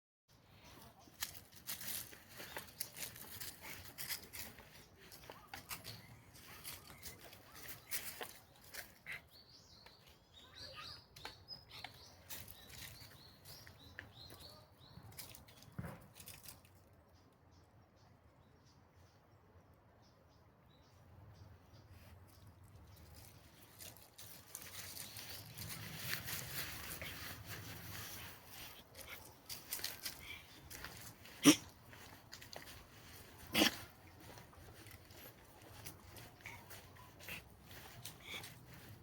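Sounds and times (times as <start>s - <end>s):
small birds twittering: 0.6s - 39.0s
footsteps crunching dry leaves: 1.0s - 8.8s, 23.0s - 39.0s.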